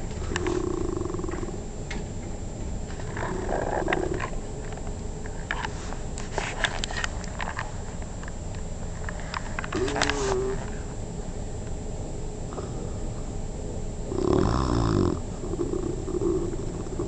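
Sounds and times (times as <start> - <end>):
person snoring: 14.1 - 17.0.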